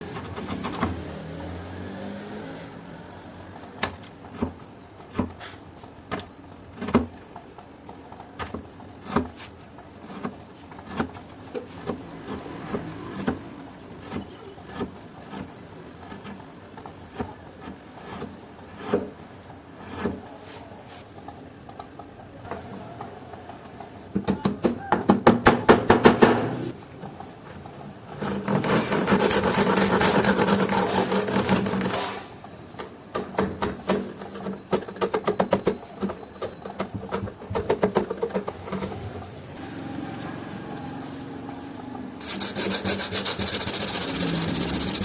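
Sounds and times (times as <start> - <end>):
chisel knocking on wood: 24.1 - 26.6.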